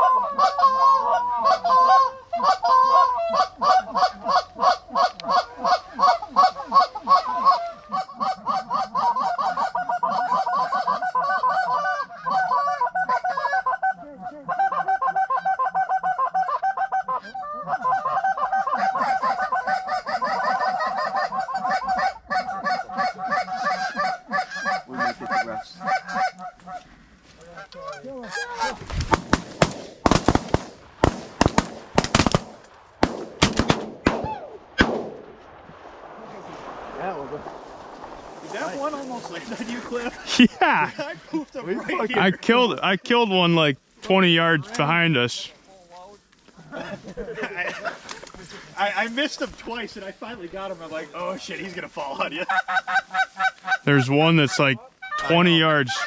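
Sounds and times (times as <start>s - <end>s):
geese honking: 0.0s - 34.9s, 36.4s - 43.4s, 48.4s - 56.0s
shotgun blasts: 29.0s - 38.7s.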